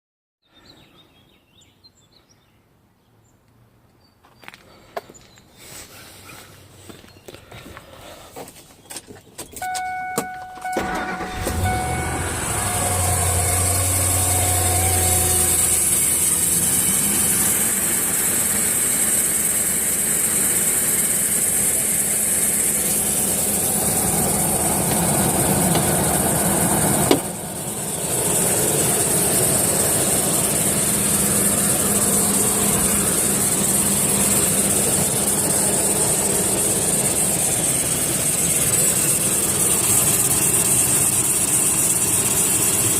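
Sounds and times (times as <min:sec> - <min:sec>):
car engine cranking and idling: 0:06.1 - 0:42.9
high-pitched whine: 0:09.6 - 0:19.6.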